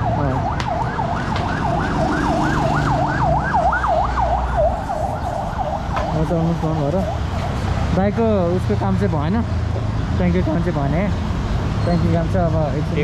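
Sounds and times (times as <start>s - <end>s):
electronic siren yelping: 0.0s - 6.2s.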